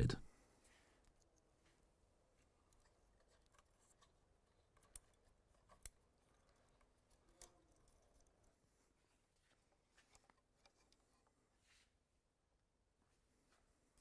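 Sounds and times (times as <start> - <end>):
small parts clicking: 2.4 - 8.7.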